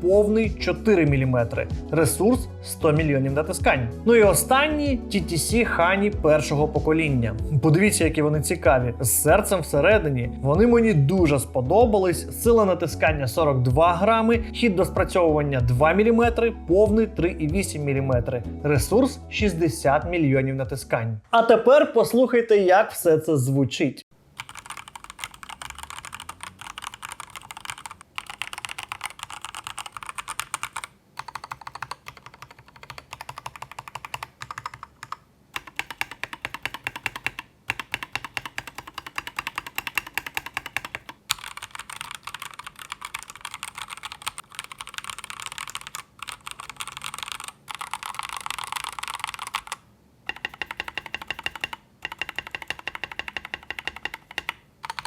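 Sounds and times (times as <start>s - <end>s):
mechanical keyboard keys clacking: 24.4s - 55.0s.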